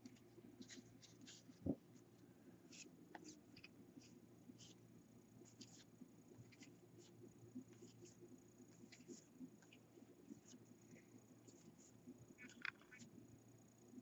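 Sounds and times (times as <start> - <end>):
cards sliding and flipping: 0.6 - 1.5, 5.5 - 6.8.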